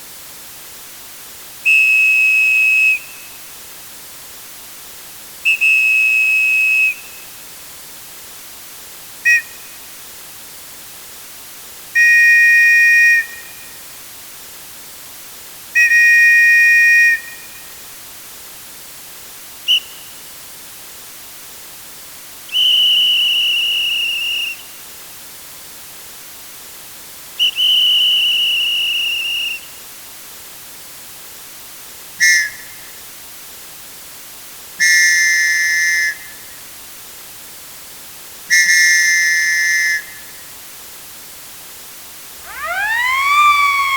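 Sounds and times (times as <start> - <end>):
faint steady hiss: 0.0 - 43.9
sports whistle blasts: 42.4 - 43.9.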